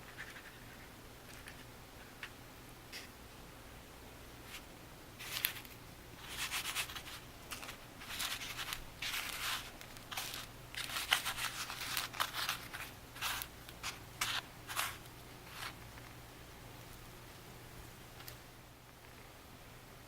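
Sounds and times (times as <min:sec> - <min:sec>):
crunching breadcrumb coating: 0:05.2 - 0:17.1.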